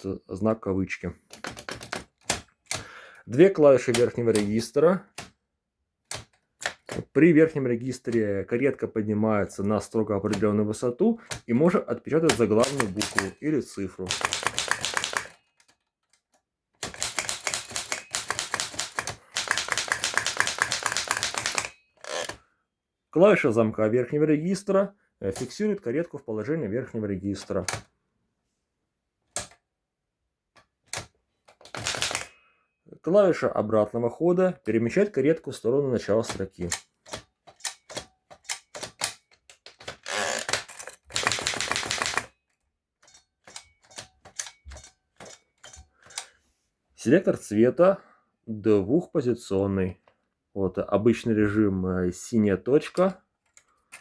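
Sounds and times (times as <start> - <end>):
typewriter typing: 1.3 - 2.9, 3.8 - 4.6, 12.2 - 15.7, 16.8 - 22.4, 30.9 - 32.4, 36.3 - 42.3.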